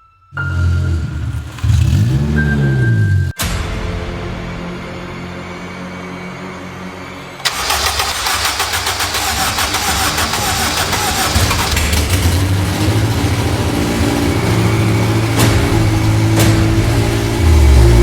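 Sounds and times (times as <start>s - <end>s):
car engine starting and idling: 0.4s - 3.4s, 7.4s - 18.0s.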